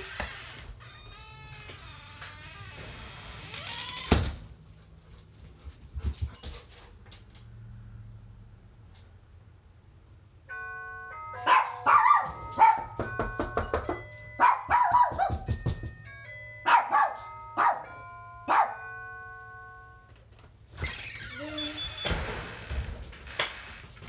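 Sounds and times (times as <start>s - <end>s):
musical doorbell chime: 10.5s - 23.4s
dogs barking excitedly: 11.4s - 15.6s, 16.7s - 17.9s, 18.5s - 18.9s.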